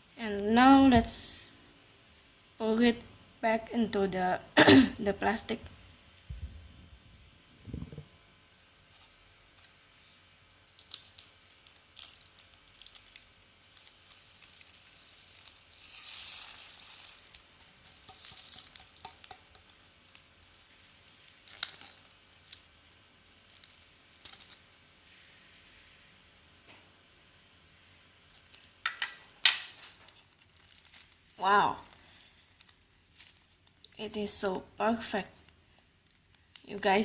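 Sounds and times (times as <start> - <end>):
plastic crinkling: 10.6 - 24.8, 28.2 - 33.9, 35.3 - 36.9
tiny beads pouring: 11.0 - 19.6.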